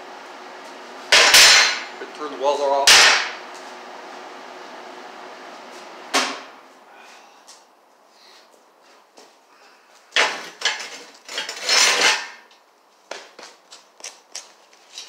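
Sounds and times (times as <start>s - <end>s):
objects clattering and scraping: 10.1s - 15.0s.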